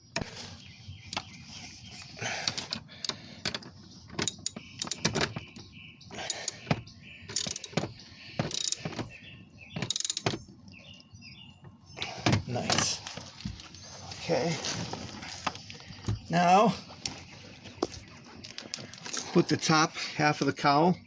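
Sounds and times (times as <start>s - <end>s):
metal tools clinking: 4.2s - 5.3s, 6.2s - 6.7s, 7.3s - 7.9s, 8.5s - 9.0s, 9.8s - 10.4s, 17.8s - 18.1s
socket ratchet clicking: 4.2s - 5.3s, 6.3s - 6.7s, 7.3s - 7.8s, 8.5s - 8.8s, 9.8s - 10.4s.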